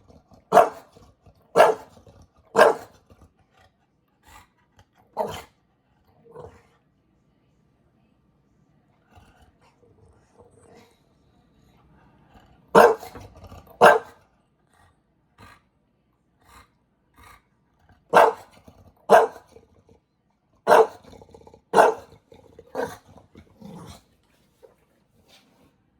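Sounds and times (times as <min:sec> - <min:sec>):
bulldog barking: 0:00.4 - 0:03.0, 0:05.2 - 0:05.5, 0:12.7 - 0:14.2, 0:18.1 - 0:19.6, 0:20.6 - 0:23.0.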